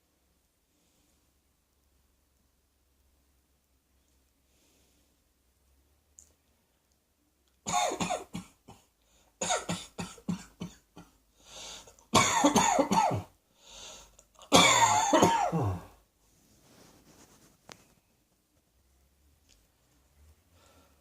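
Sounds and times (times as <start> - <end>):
soft breaths: 0.5 - 1.6, 3.9 - 7.0, 9.0 - 9.4, 11.2 - 12.1, 13.4 - 14.3, 15.8 - 18.9, 19.6 - 21.0
person coughing: 7.7 - 11.1, 12.1 - 13.3, 14.4 - 16.0.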